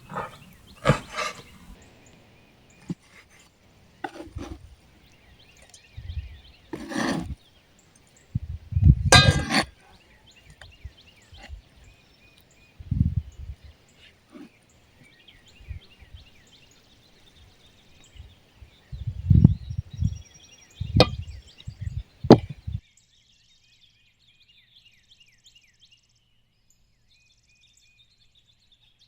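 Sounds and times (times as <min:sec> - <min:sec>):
knocks and scrapes: 0:00.0 - 0:01.9, 0:02.7 - 0:07.4, 0:08.4 - 0:09.9, 0:20.8 - 0:22.8.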